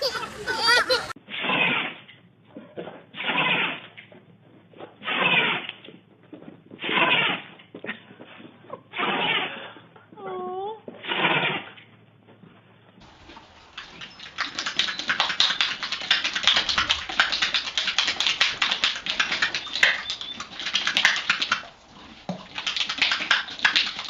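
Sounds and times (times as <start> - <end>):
dog making scratchy clicks: 13.2 - 24.0.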